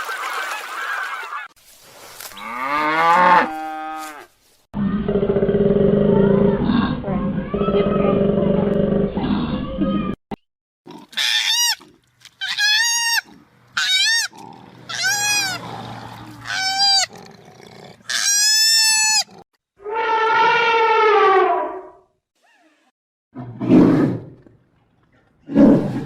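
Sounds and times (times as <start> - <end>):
animal calling: 11.1 - 17.3.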